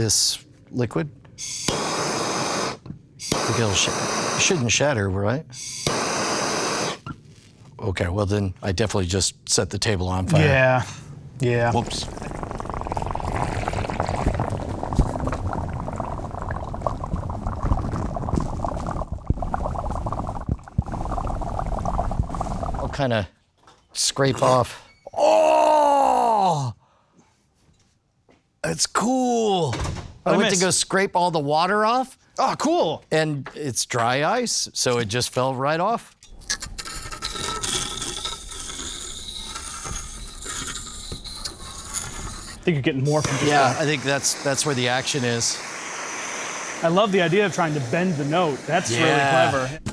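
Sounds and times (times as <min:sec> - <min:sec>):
dry ice bubbling and fizzing: 0:01.4 - 0:04.9, 0:05.6 - 0:07.7, 0:10.3 - 0:23.2, 0:36.3 - 0:49.9.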